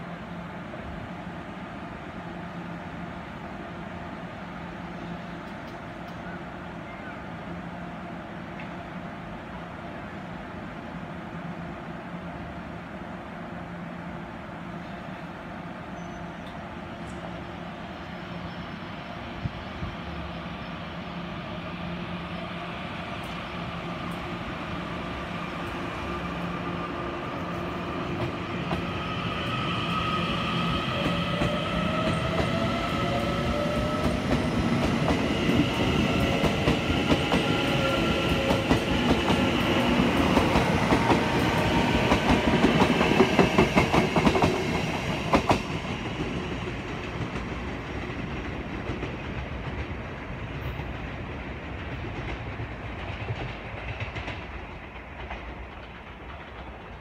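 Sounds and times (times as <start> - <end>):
train wheels clacking on rails: 27.8 - 57.0.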